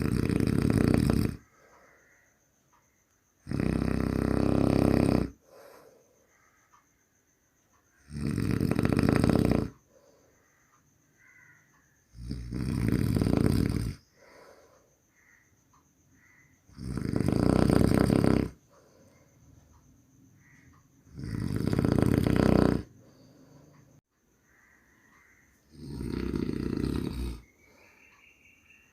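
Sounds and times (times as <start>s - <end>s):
person snoring: 0.0s - 1.5s, 3.4s - 6.0s, 8.0s - 9.8s, 12.1s - 14.5s, 16.7s - 18.6s, 21.1s - 23.8s, 25.7s - 27.5s
quiet breathing: 0.9s - 8.0s, 9.7s - 12.8s, 13.6s - 17.6s, 18.2s - 28.9s.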